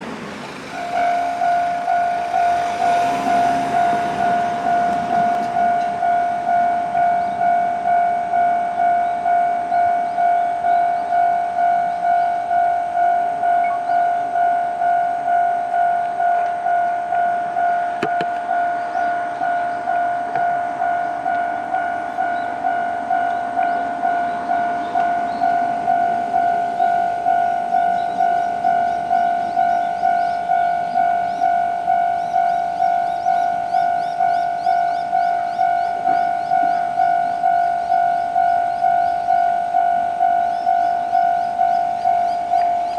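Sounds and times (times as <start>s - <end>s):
level-crossing warning bell: 0.0s - 42.9s.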